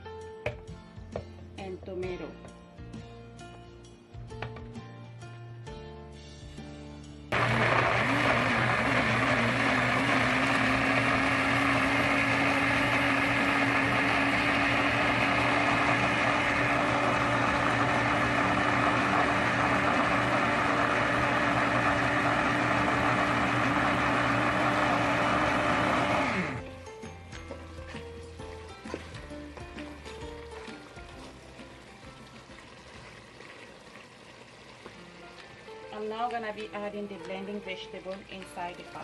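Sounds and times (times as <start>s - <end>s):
electric blender running: 7.3s - 26.7s.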